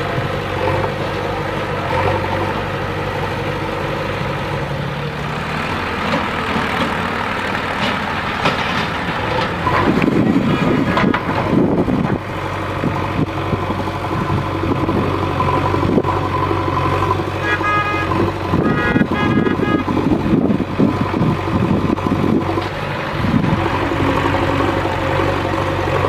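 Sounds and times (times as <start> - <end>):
diesel engine running: 0.0 - 26.0
vehicle horn: 17.4 - 20.1.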